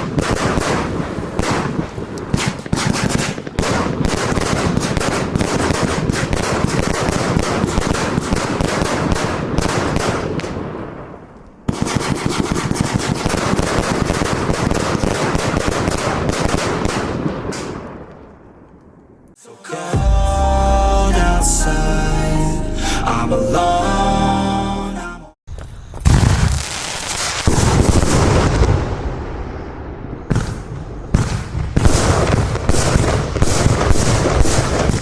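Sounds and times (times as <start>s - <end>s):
fireworks firing rapid bangs: 0.0s - 10.8s, 11.7s - 17.9s, 26.1s - 29.0s, 30.3s - 35.0s.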